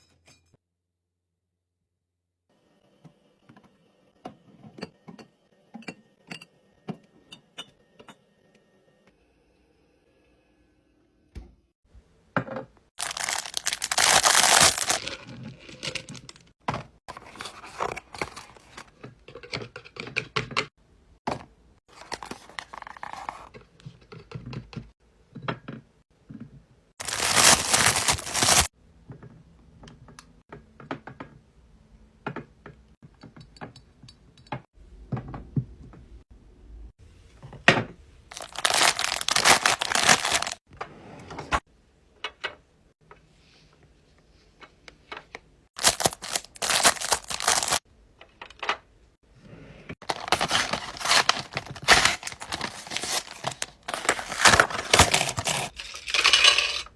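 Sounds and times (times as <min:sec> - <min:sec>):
plastic packaging crinkling: 0:13.0 - 0:16.5, 0:27.0 - 0:28.7, 0:38.3 - 0:40.6, 0:45.8 - 0:47.8, 0:50.0 - 0:56.4.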